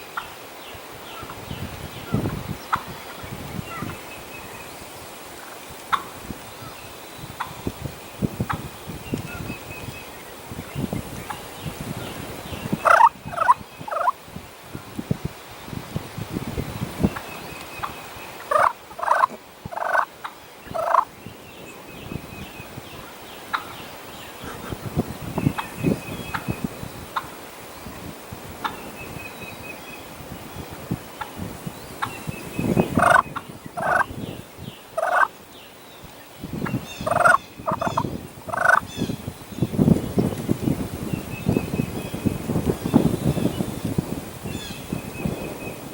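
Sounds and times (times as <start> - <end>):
wind rumbling on microphone: 0.0 - 45.9
turkey gobbling: 12.8 - 14.2, 18.4 - 20.1, 20.7 - 21.1, 33.0 - 33.2, 33.8 - 34.1, 35.0 - 35.3, 37.0 - 38.8.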